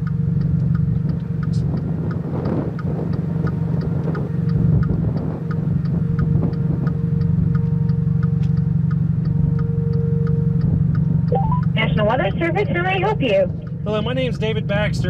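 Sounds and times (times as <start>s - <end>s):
faint regular ticking: 0.0s - 14.5s
vehicle hum inside cabin: 0.0s - 15.0s
phone call tone: 11.3s - 11.8s.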